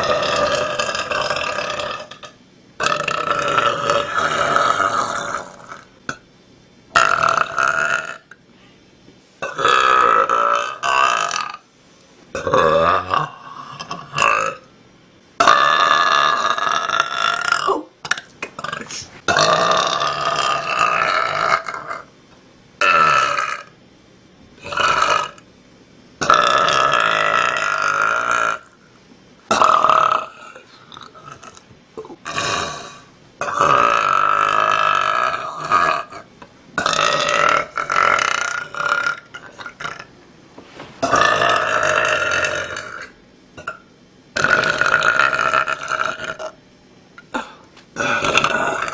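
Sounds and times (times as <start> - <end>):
woman belching: 0.0 - 5.8, 7.0 - 8.4, 9.4 - 11.6, 12.4 - 14.7, 15.4 - 22.0, 22.8 - 23.7, 26.2 - 28.7, 29.5 - 40.1, 41.0 - 43.8, 44.4 - 46.6, 47.2 - 48.9.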